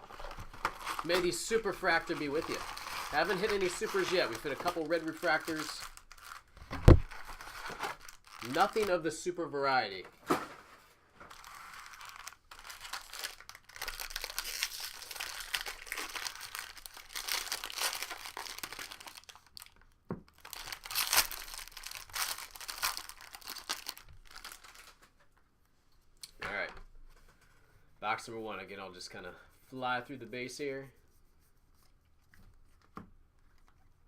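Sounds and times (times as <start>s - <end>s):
plastic wrapping crinkling and tearing: 0.0s - 9.1s, 11.2s - 25.1s.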